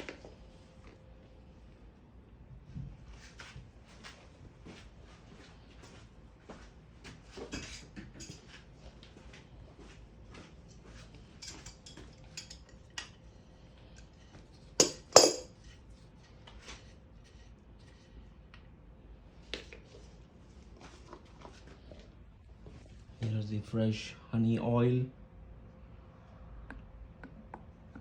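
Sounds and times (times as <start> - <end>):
tools and parts clinking: 7.5 - 8.5, 11.4 - 13.1, 14.8 - 15.6.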